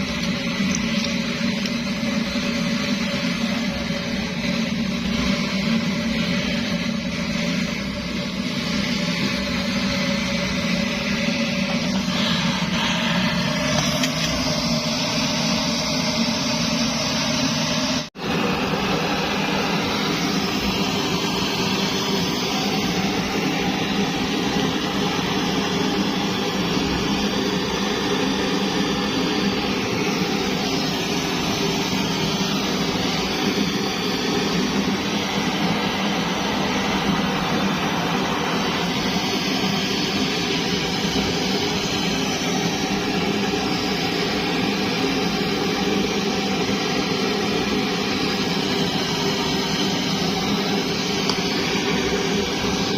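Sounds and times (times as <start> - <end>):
pressure stove hissing: 0.0 - 52.9.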